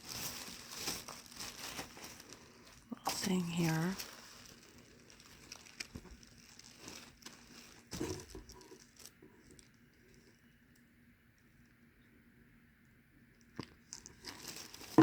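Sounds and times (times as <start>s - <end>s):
tissue paper rustling: 0.0s - 10.2s, 14.0s - 15.0s.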